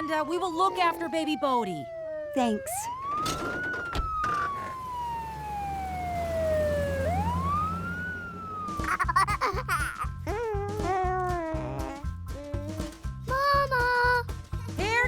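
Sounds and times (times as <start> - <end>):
cartoon siren wailing: 0.0 - 12.0
low engine rumble: 2.9 - 15.0.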